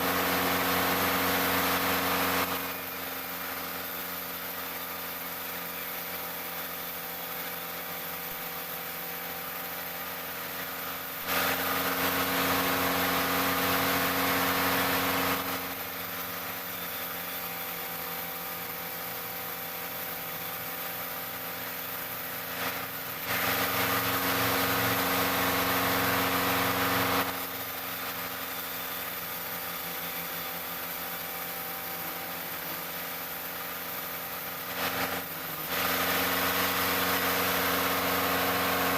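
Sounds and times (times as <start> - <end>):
sawmill machinery humming: 0.0 - 38.9.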